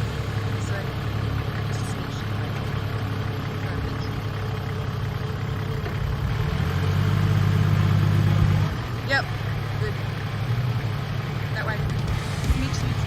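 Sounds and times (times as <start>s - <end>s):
vehicle engine running: 0.0s - 13.0s.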